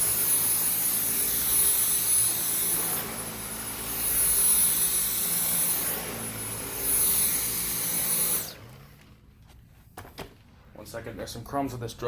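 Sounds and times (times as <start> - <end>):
vacuum cleaner whining over carpet: 0.0 - 9.2.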